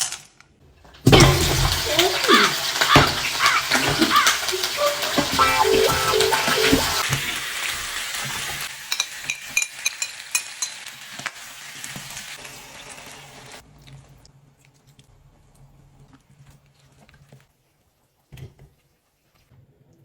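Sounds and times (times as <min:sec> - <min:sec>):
food sizzling in a pan: 0:01.0 - 0:13.6.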